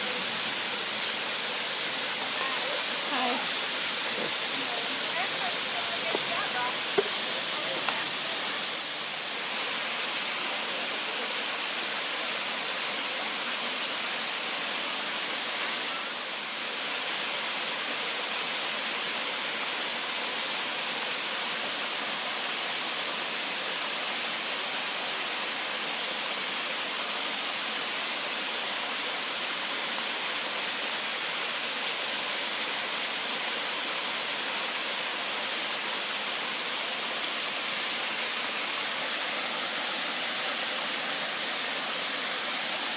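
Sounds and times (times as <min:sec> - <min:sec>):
waterfall roar: 0:00.0 - 0:42.9.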